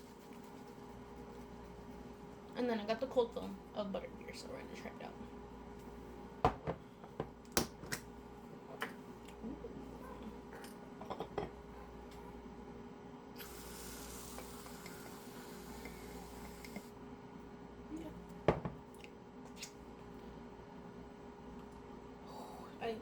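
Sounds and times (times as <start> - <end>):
foam dispenser hissing: 13.4 - 16.9.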